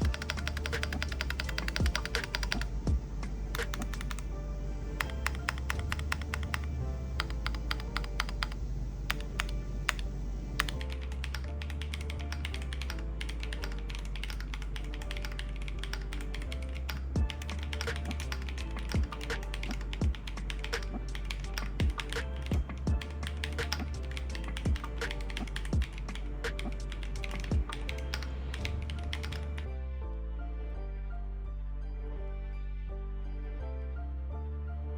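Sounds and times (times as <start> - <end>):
mechanical keyboard typing: 0.0 - 2.8, 3.5 - 4.3, 4.9 - 10.0, 10.6 - 29.6
background music with bass: 0.0 - 34.9.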